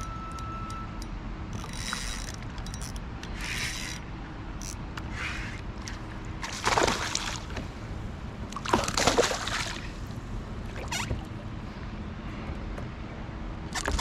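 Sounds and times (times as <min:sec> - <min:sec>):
water sloshing and splashing: 0:05.3 - 0:11.6.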